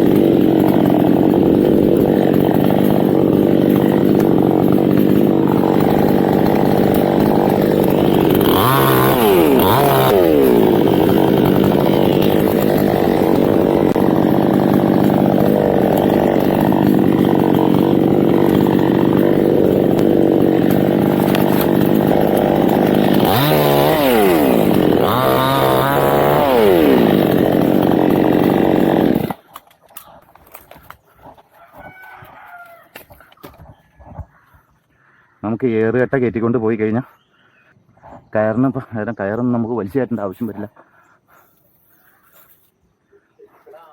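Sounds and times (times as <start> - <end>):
chainsaw engine running: 0.0 - 32.7.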